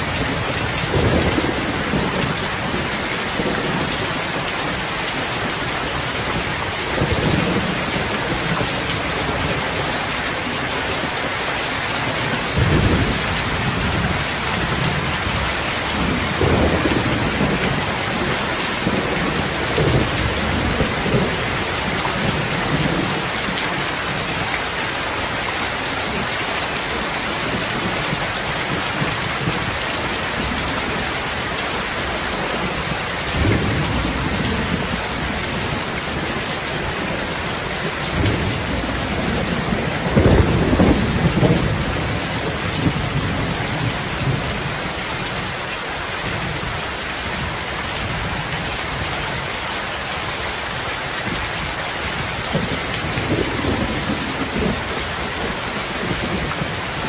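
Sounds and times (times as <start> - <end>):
low rolls of thunder: 0.0 - 4.0, 12.5 - 23.6, 32.6 - 44.8
heavy rain: 0.0 - 57.0.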